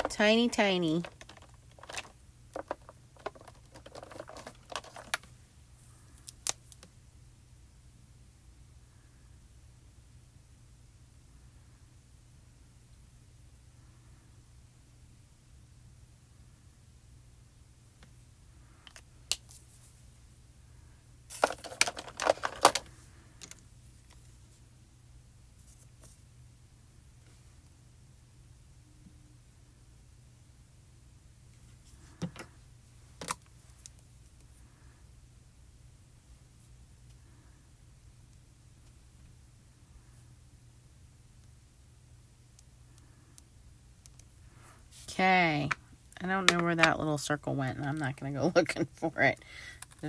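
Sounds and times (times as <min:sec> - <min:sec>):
paper pieces tapping and rustling: 0:00.0 - 0:05.3, 0:21.3 - 0:22.9
craft tools clicking and clattering: 0:01.0 - 0:05.2, 0:21.4 - 0:23.6.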